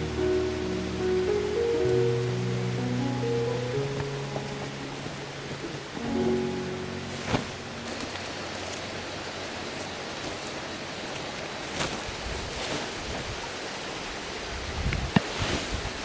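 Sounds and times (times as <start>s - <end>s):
outdoor hiss: 0.0s - 16.0s.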